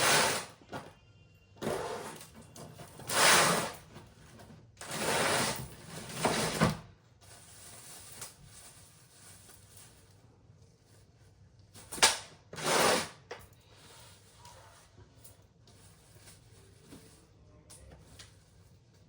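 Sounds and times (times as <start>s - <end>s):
suitcase zipper pulls: 12.6s - 13.2s.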